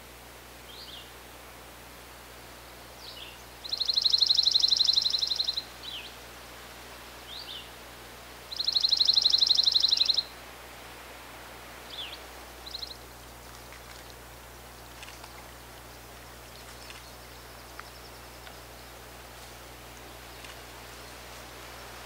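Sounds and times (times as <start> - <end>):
bird call notes: 3.0 - 6.1, 8.5 - 10.3, 11.9 - 13.0
songbird trilling: 3.0 - 6.2, 8.5 - 10.3, 11.9 - 13.0.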